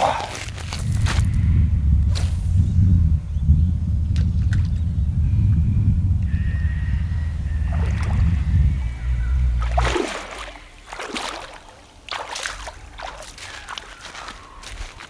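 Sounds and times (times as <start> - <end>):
low rumble: 0.4 - 10.8
fish splashing at water surface: 9.6 - 15.0.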